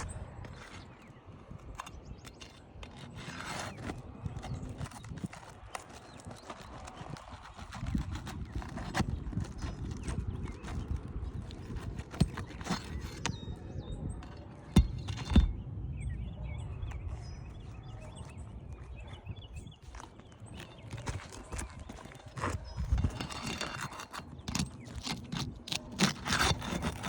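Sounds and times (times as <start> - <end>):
tool scraping under shingle: 0.0 - 15.7, 19.9 - 27.0
shingles tearing: 1.7 - 13.3, 21.0 - 27.0.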